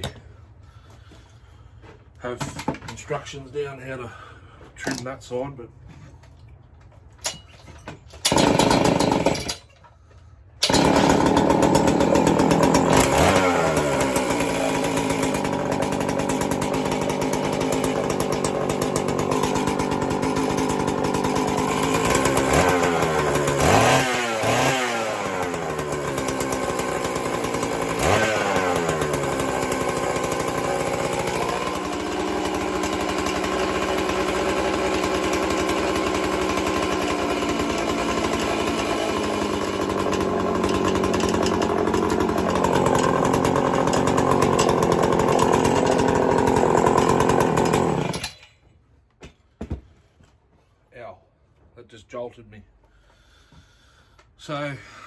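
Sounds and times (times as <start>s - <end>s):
chainsaw revving and idling: 8.2s - 9.6s, 10.6s - 48.4s.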